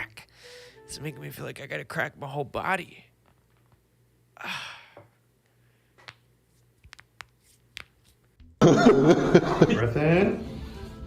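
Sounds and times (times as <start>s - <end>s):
person sighing: 4.4s - 5.2s.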